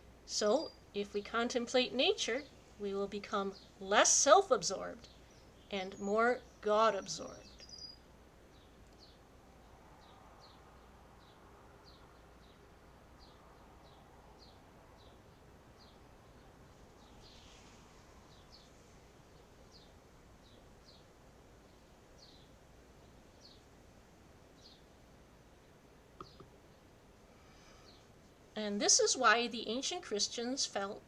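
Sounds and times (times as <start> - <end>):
faint outdoor ambience: 0.0 - 31.0
small bird chirping: 2.1 - 23.8, 24.5 - 24.9, 25.6 - 26.9.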